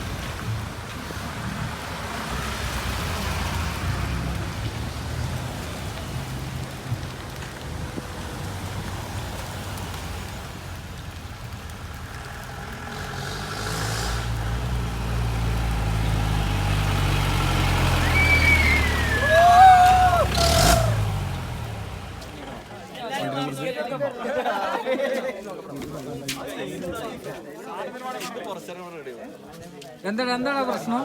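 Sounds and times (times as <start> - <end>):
off-road vehicle engine rumbling: 0.0 - 23.1.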